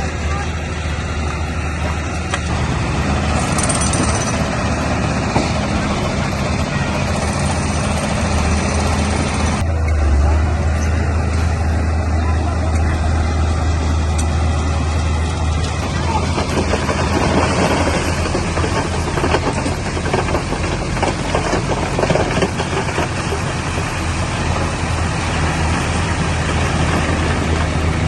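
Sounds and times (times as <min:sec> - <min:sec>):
bulldozer diesel engine rumble: 0:00.0 - 0:28.0.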